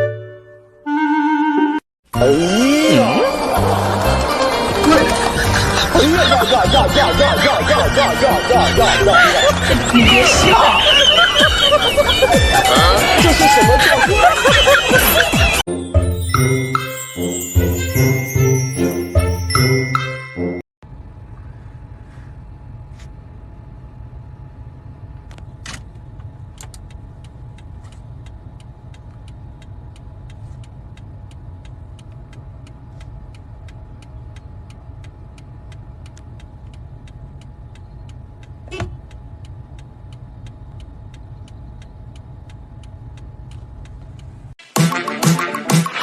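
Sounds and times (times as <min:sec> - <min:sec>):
light regular ticking: 0:25.9 - 0:44.6.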